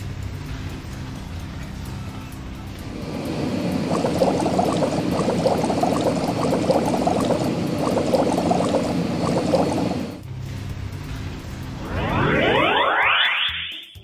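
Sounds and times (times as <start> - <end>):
cartoon water bubbling: 2.9 - 10.2.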